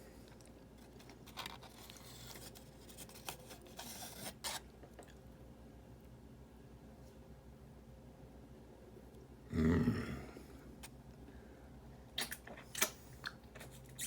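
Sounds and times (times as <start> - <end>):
soft eating squishes: 0.0 - 3.6, 12.0 - 14.0.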